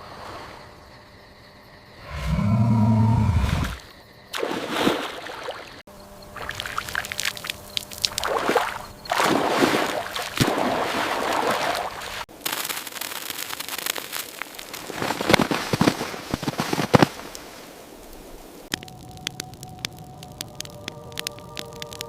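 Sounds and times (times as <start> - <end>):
water sloshing and lapping: 3.4 - 12.3
small clicks and splashes: 6.4 - 17.5, 18.7 - 22.0.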